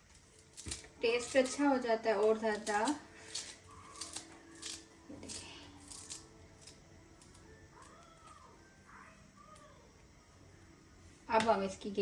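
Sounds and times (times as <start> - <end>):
snips of herbs being cut: 2.2 - 7.4.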